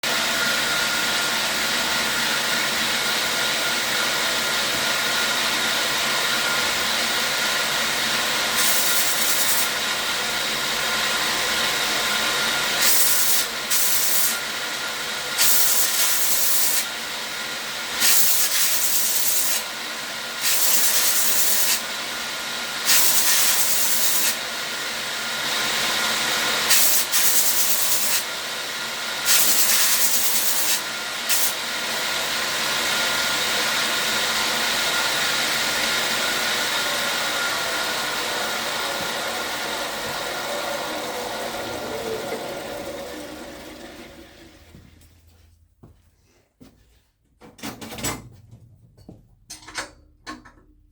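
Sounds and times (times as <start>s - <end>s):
belt grinder whining: 0.1s - 44.8s
hissing of work on abrasive belt: 4.6s - 14.6s, 15.2s - 17.0s, 17.9s - 22.0s, 22.8s - 24.7s, 25.3s - 44.8s.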